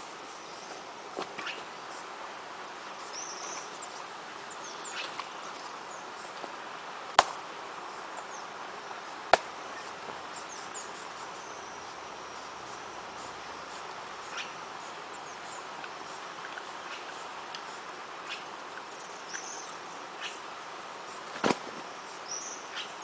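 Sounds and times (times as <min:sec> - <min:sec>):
outdoor ambience: 0:00.0 - 0:23.0
faint high bird chirps: 0:09.7 - 0:15.7, 0:22.0 - 0:23.0.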